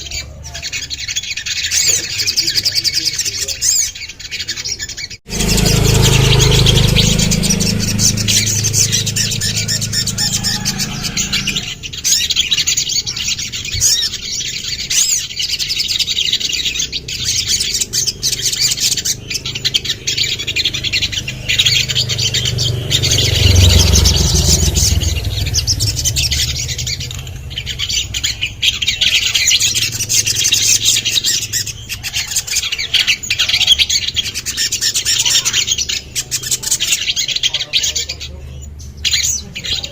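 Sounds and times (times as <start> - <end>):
bird chirping and trilling: 0.0 - 39.9
low rumble: 5.3 - 12.0, 17.0 - 30.7.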